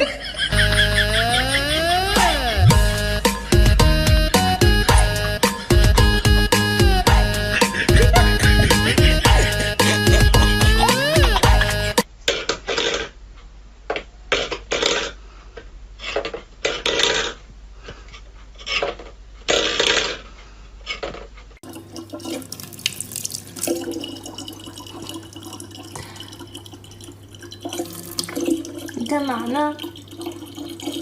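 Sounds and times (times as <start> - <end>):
low hum: 0.4 - 12.0
water splashing: 21.6 - 31.0.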